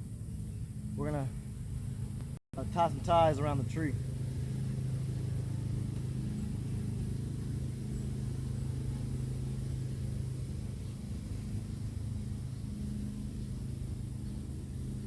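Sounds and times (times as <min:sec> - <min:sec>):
engine idling hum: 0:00.0 - 0:15.0
faint higher pulsing tone: 0:03.4 - 0:15.0.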